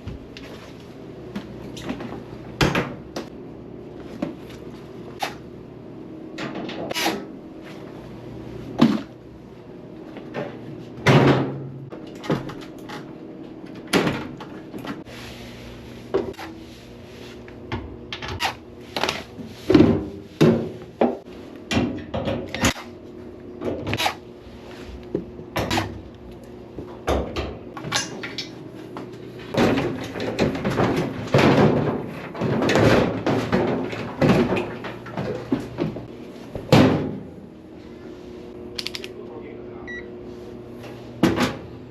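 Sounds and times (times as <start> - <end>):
steady low hum: 0.0 - 41.9
knocks clicks and clatters: 29.5 - 36.1.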